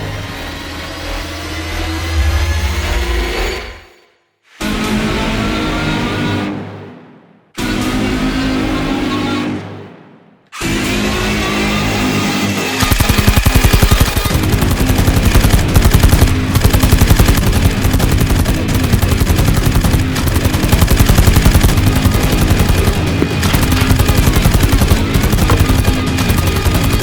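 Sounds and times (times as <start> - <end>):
backing music track: 10.8 - 27.0
rapid automatic gunfire: 12.8 - 27.0.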